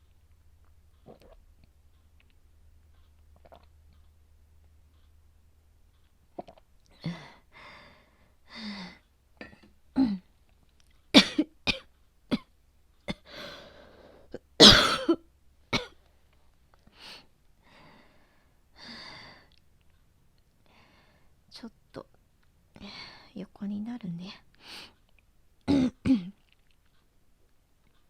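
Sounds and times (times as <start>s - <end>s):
woman coughing: 11.2s - 12.5s, 13.1s - 13.3s, 14.6s - 15.2s, 15.8s - 16.0s, 25.7s - 26.4s.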